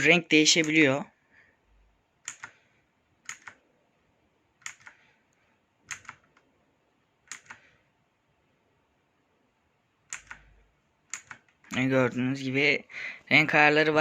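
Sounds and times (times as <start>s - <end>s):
mechanical keyboard key clicks: 2.2s - 2.5s, 3.2s - 3.6s, 4.6s - 5.0s, 5.9s - 6.4s, 7.3s - 7.6s, 10.1s - 10.4s, 11.1s - 11.7s.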